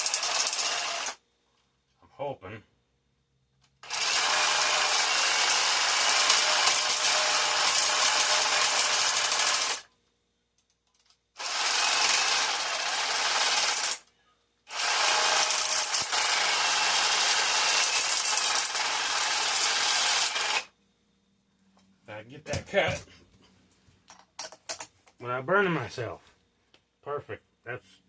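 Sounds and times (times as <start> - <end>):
power tool cutting metal: 3.8 - 9.8.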